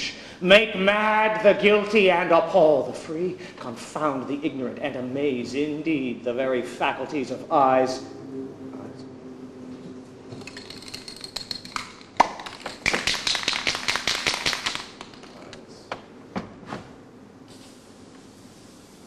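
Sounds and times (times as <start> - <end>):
sharp taps and clicks: 11.1 - 15.3
loud crack: 11.8 - 15.5.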